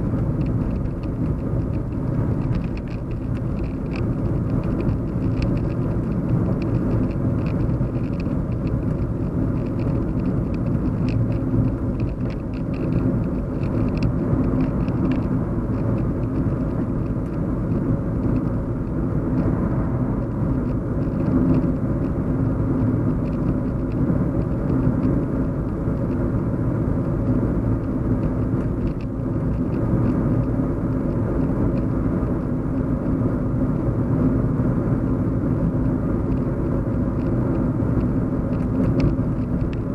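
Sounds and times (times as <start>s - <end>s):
car cabin hum and road rumble: 0.0s - 39.9s
faint light ticks: 0.1s - 18.6s, 27.2s - 32.0s, 35.8s - 39.9s.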